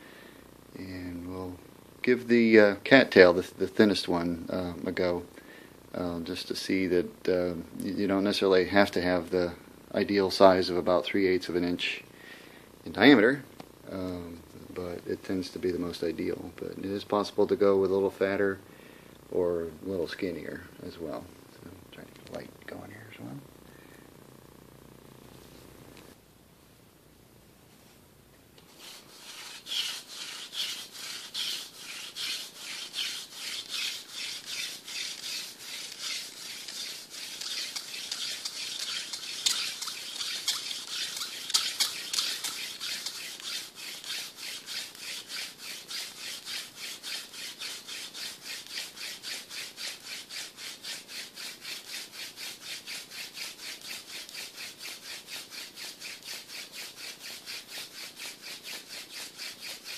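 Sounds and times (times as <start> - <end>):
hand drill spindle rubbing on wood: 28.6 - 59.9.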